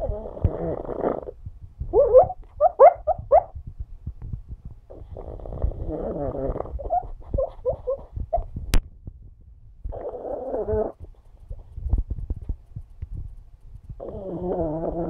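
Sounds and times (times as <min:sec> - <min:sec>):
dog snoring: 0:00.0 - 0:01.4, 0:04.9 - 0:07.1, 0:09.9 - 0:11.0, 0:14.0 - 0:15.0
dog whimpering in sleep: 0:00.0 - 0:03.5, 0:04.9 - 0:08.6, 0:09.9 - 0:11.6, 0:14.0 - 0:15.0.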